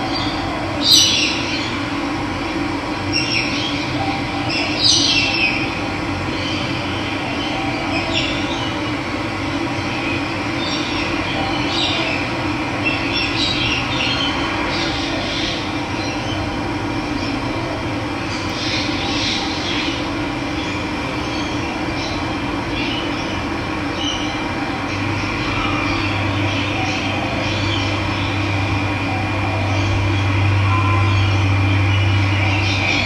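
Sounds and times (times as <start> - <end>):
birds chirping: 18.2 - 33.0.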